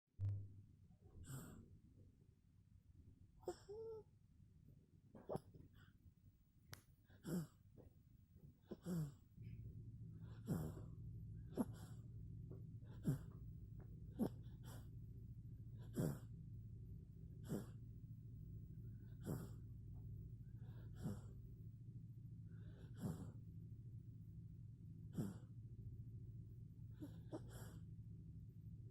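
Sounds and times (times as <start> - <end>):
steady low hum: 0.2 - 28.9
baby snoring: 3.4 - 4.0, 7.2 - 7.6, 8.7 - 9.2, 10.2 - 10.9, 11.5 - 12.0, 12.9 - 13.4, 14.1 - 14.9, 15.8 - 16.3, 17.4 - 17.8, 19.0 - 19.7, 20.6 - 21.4, 22.6 - 23.4, 25.1 - 25.5, 27.0 - 27.8.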